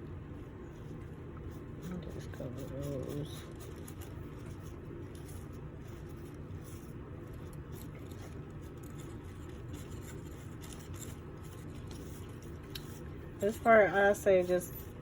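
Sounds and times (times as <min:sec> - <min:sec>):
steady low hum: 0:00.0 - 0:15.0
scratchy brushing of hair: 0:00.7 - 0:15.0.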